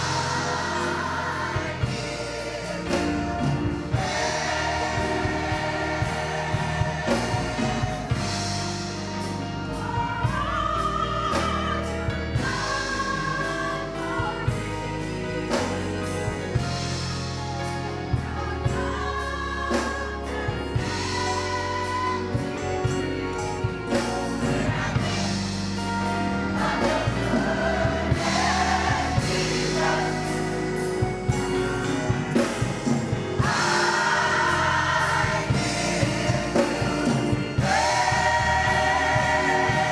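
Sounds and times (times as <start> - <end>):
gospel choir singing: 0.0 - 39.9
instrumental backing with bass and beat: 0.0 - 39.9.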